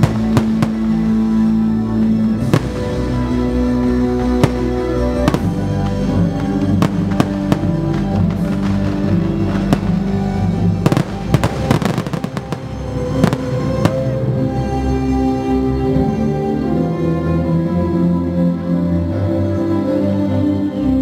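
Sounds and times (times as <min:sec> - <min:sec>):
fireworks bangs: 0:00.0 - 0:03.3, 0:04.2 - 0:14.2
fireworks crackling: 0:00.0 - 0:14.9
music with sustained tones: 0:00.0 - 0:21.0.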